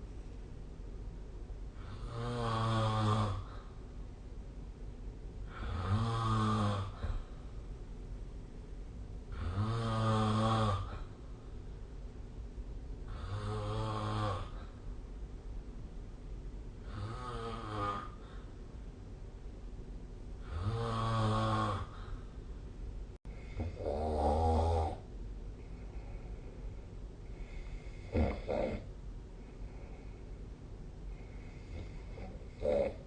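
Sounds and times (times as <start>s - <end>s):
person snoring: 1.8s - 3.7s, 5.4s - 7.2s, 9.3s - 11.1s, 13.1s - 14.8s, 16.8s - 18.5s, 20.4s - 22.2s, 23.3s - 25.0s, 27.4s - 28.9s, 31.1s - 33.0s.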